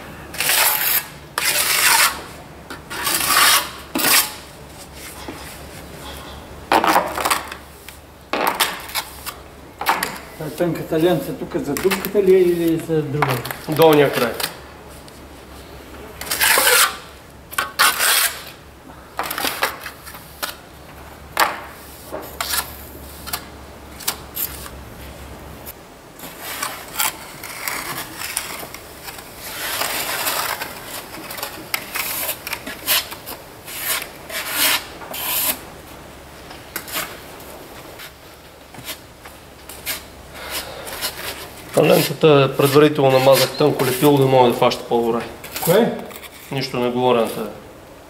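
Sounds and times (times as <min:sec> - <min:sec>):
trowel scraping adhesive on wall: 0:00.3 - 0:04.4, 0:16.2 - 0:18.6, 0:26.2 - 0:35.6, 0:39.7 - 0:44.3.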